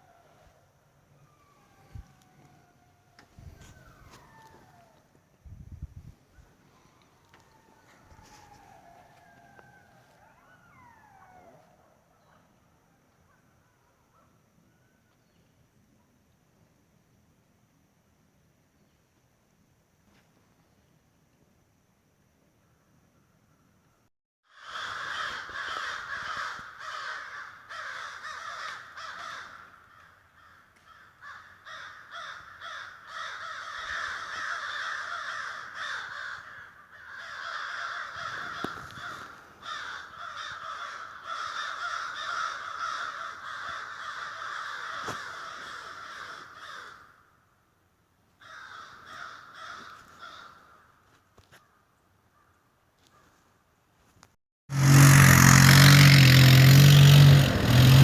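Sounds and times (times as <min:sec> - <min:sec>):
crows cawing: 0:24.5 - 0:47.5, 0:48.4 - 0:53.4.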